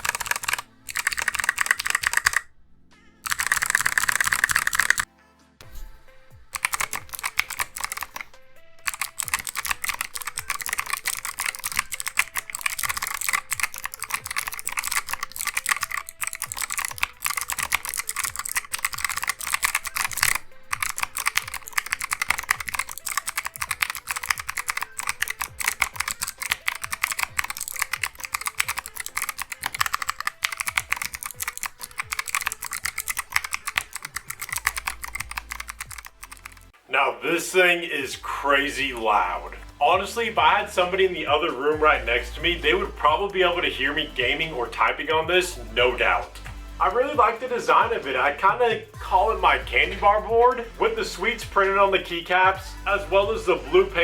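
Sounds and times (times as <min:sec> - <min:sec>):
fast typing on mechanical keyboard: 0:00.0 - 0:02.5, 0:03.2 - 0:05.1, 0:06.5 - 0:36.8.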